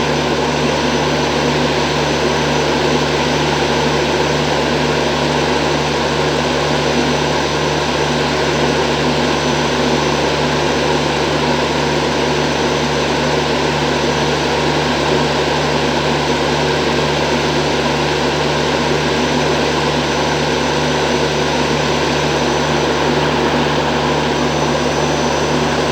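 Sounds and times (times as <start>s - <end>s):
locomotive machine drone: 21.0s - 25.9s
steady low hum: 21.1s - 25.9s.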